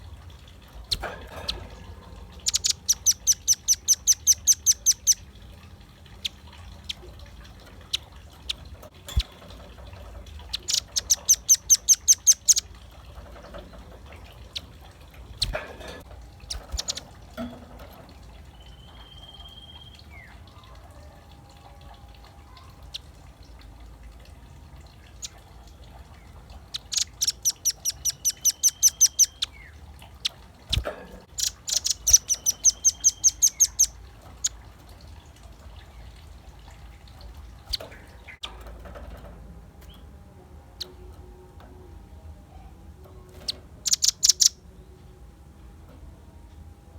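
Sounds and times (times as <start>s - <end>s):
bird chattering trills: 0.8s - 5.3s, 10.4s - 12.9s, 15.4s - 17.1s, 26.7s - 34.6s, 43.8s - 44.6s
bird chips: 0.8s - 5.3s, 7.8s - 17.2s, 26.7s - 34.6s, 43.4s - 44.6s
thin bird whistles: 18.7s - 20.0s.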